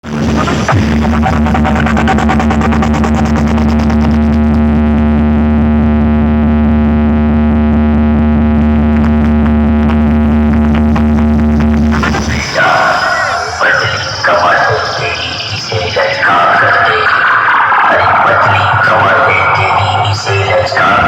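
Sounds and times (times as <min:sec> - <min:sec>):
sound system bass drone: 0:00.0 - 0:21.0
sustained high tone: 0:12.0 - 0:21.0.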